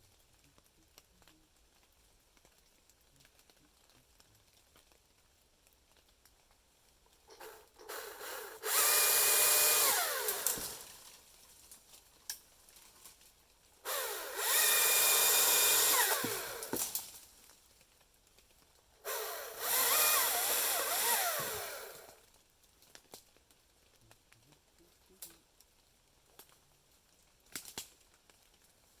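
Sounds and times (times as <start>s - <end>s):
power tool motor spinning: 7.3s - 11.0s, 13.9s - 17.0s, 19.1s - 22.2s.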